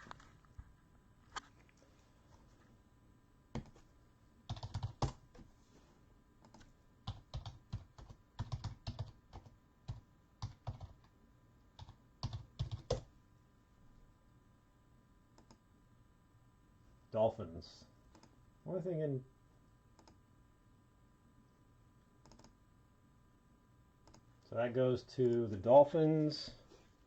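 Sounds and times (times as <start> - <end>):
typing on computer keyboard: 4.5 - 5.2, 6.4 - 11.1, 11.8 - 13.1, 22.2 - 22.5.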